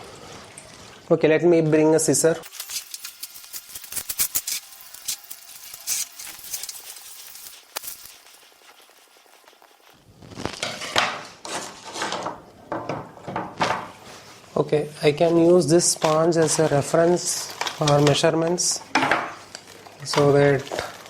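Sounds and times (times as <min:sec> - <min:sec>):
rustling and scraping: 0:02.5 - 0:12.4.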